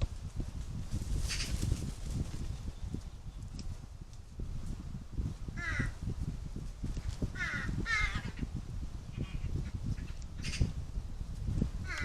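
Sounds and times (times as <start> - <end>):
wind rumble on microphone: 0.0 - 12.0
crow cawing: 5.6 - 6.0, 7.4 - 8.3.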